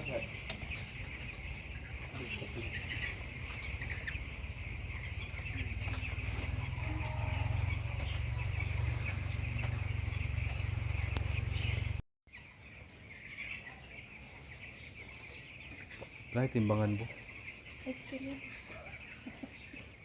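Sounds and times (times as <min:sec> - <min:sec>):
chickens clucking: 0:00.0 - 0:20.0
heavy low rumble: 0:04.3 - 0:12.0.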